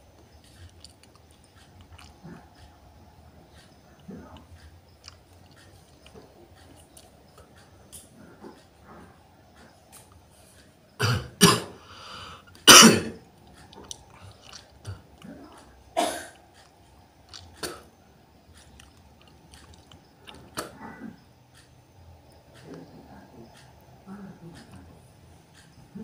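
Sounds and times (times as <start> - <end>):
person coughing and clearing throat: 11.0 - 11.8, 12.6 - 13.2, 16.0 - 16.4.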